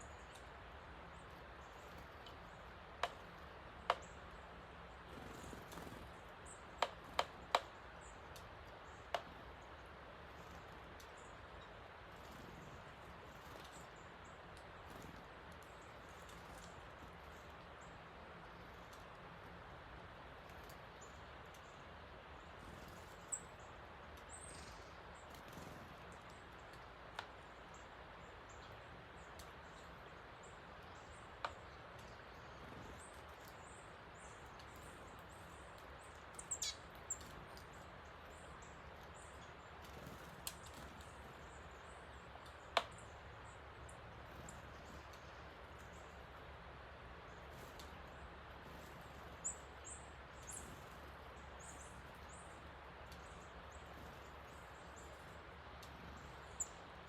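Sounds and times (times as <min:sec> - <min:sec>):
bird chirps: 0:22.6 - 0:26.4, 0:30.8 - 0:43.6, 0:48.7 - 0:56.8.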